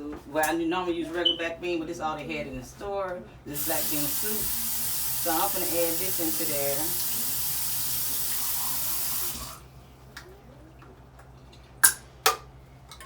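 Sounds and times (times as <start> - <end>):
tap water running: 3.5 - 9.7.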